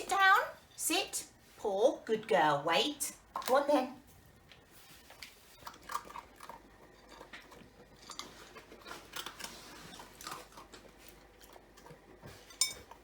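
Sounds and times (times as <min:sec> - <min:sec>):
puppy chewing and crunching food: 0:03.3 - 0:13.0.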